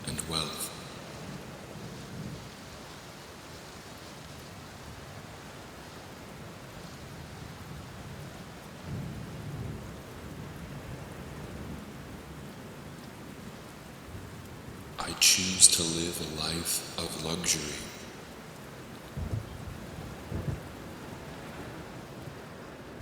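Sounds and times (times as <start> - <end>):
steady rain falling: 0.0 - 23.0
low rumble of thunder: 19.2 - 22.0.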